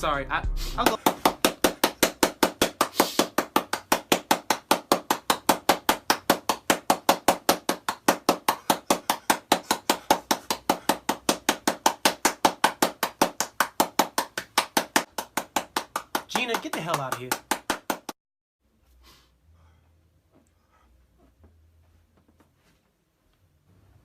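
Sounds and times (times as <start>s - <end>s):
rapid sharp knocks: 0.9s - 18.2s.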